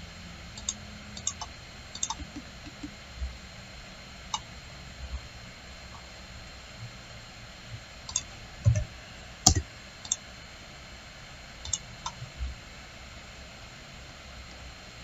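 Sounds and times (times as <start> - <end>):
computer mouse clicks: 0.6 - 2.9, 8.1 - 8.9, 11.6 - 12.2
soft low thumps: 2.1 - 3.0.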